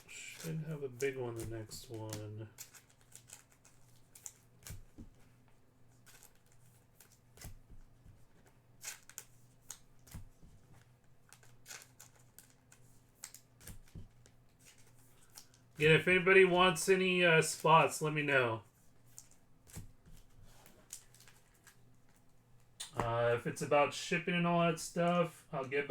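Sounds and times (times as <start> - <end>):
trading cards rustling: 0.0 - 23.0
faint low hum: 0.0 - 25.9.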